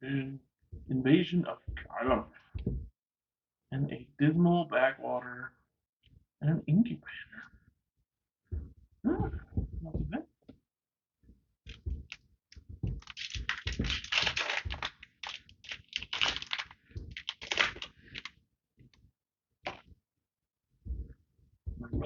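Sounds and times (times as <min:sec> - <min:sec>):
foil wrapper crinkling: 0:13.0 - 0:18.3.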